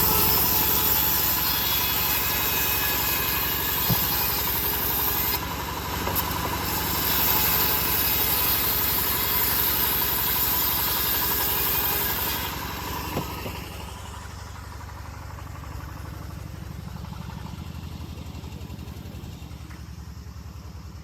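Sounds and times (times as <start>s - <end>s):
bandsaw cutting hiss: 0.0s - 5.4s
engine idling: 0.0s - 21.0s.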